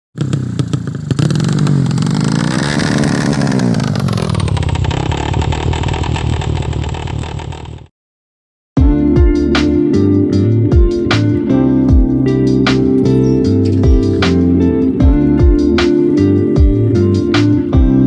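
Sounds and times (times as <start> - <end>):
motorcycle engine revving hard: 0.2 - 7.9.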